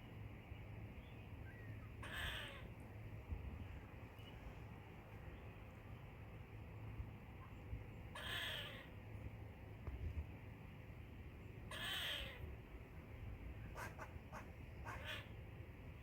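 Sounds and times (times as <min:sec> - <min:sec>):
squirrel calling: 0:01.5 - 0:02.7, 0:08.1 - 0:09.0, 0:11.7 - 0:12.5, 0:13.7 - 0:15.4.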